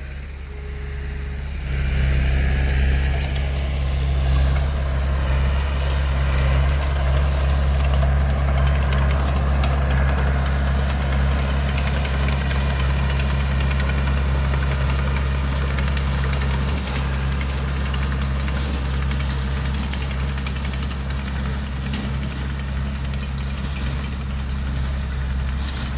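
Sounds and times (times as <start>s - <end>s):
heavy diesel engine running: 0.0s - 25.9s.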